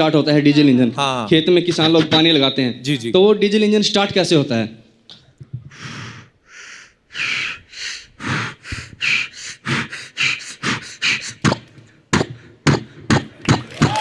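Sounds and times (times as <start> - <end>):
man imitating engine by mouth: 7.1 - 14.0.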